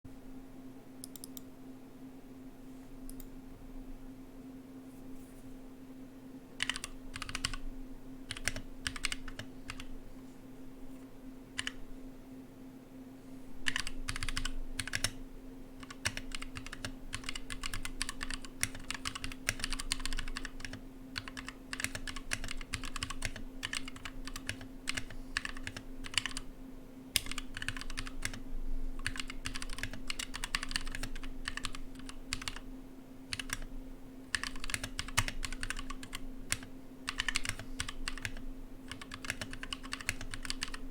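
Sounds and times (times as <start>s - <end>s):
mechanical keyboard typing: 6.6s - 7.6s, 8.3s - 9.9s, 11.6s - 11.8s, 13.7s - 15.2s, 15.8s - 26.4s, 27.2s - 28.4s, 29.0s - 32.6s, 33.3s - 33.7s, 34.3s - 40.9s.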